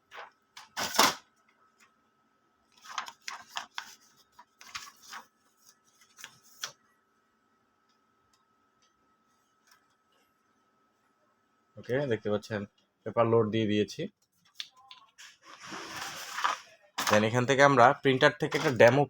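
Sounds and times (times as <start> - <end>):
faint steady hum: 0.0 - 19.0
paper rustling: 2.8 - 6.8, 15.2 - 17.4, 18.5 - 18.9.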